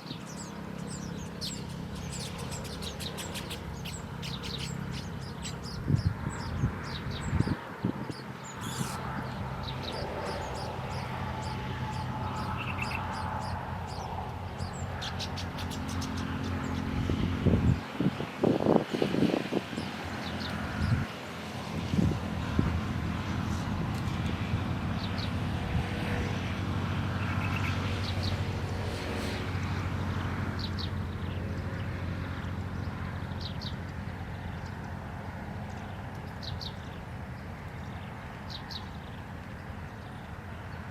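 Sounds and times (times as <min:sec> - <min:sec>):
small birds chirping: 0:00.0 - 0:21.1, 0:30.4 - 0:40.9.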